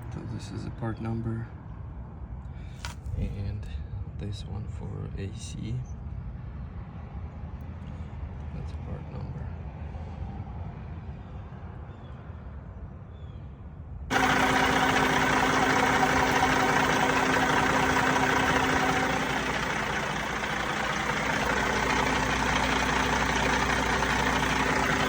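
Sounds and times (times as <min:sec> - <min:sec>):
diesel truck engine idling: 0:14.1 - 0:25.0.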